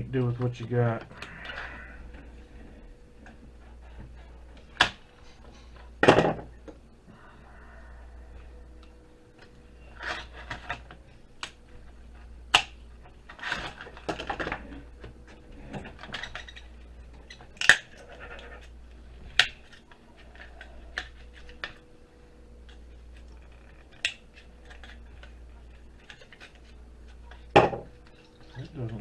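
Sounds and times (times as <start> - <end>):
components snapping: 12.5 - 12.8.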